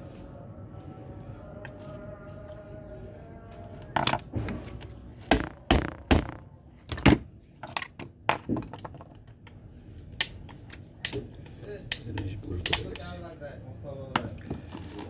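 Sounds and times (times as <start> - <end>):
light music: 0.0 - 4.9
hard objects knocking and clacking: 5.3 - 9.2.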